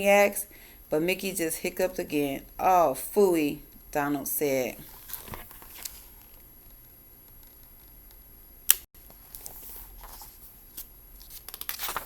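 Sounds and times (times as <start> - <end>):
paper pages handled: 9.0 - 12.0.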